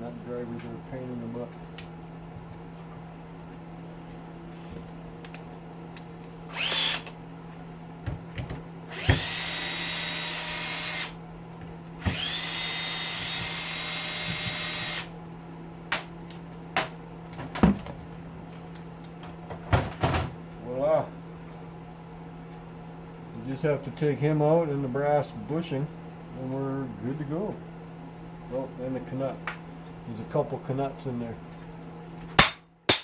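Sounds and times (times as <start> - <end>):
cordless drill whining: 6.5 - 7.2, 8.9 - 11.2, 12.0 - 15.1.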